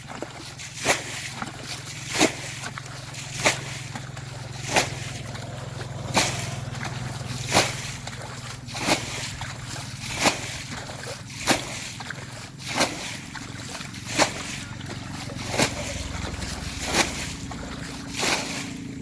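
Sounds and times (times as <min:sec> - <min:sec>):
steady low hum: 0:00.1 - 0:19.0
sharp hits: 0:15.3 - 0:18.7.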